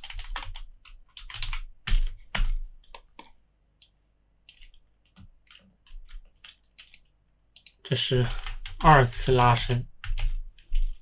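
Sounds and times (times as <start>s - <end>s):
keyboard keystroke clicks: 3.8s - 7.8s.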